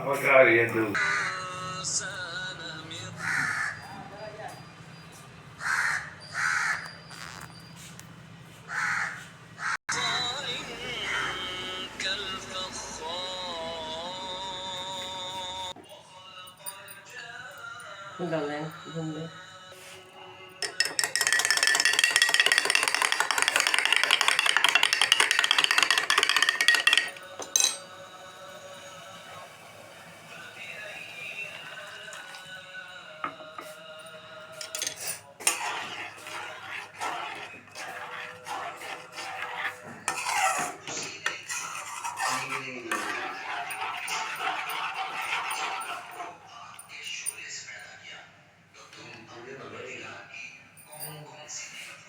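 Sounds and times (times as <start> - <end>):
nuts rattling in a jar: 20.6 - 27.9
metal utensil scraping a pan: 20.6 - 28.2, 34.6 - 47.0
mixer grinder running: 41.8 - 46.3.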